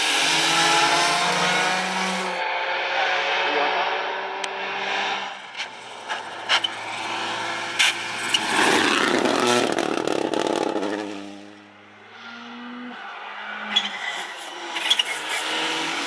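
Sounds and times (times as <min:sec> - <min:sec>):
rally car engine passing: 0:00.0 - 0:16.0
sharp cracks: 0:06.0 - 0:11.7.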